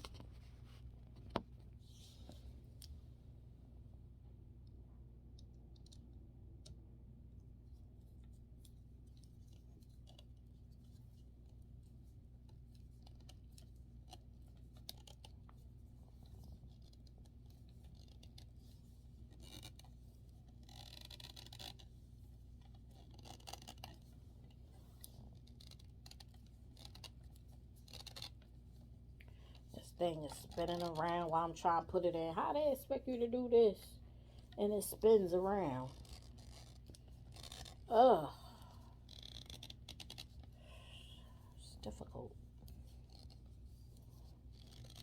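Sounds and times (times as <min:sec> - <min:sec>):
steady low hum: 0:00.0 - 0:45.0
scratchy rasp: 0:20.5 - 0:21.9, 0:24.7 - 0:28.4, 0:35.5 - 0:37.9.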